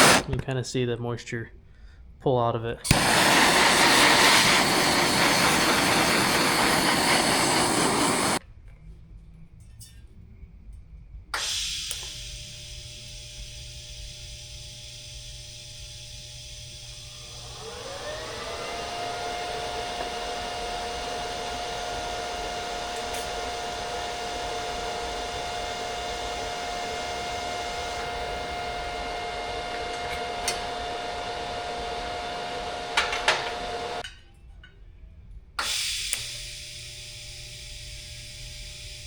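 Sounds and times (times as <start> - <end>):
electric motor whine: 0.0 - 0.3, 2.9 - 8.4, 11.9 - 34.0.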